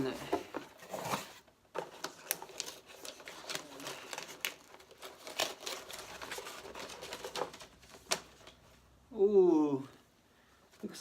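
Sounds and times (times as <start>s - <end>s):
packaging crinkling: 1.8s - 8.6s.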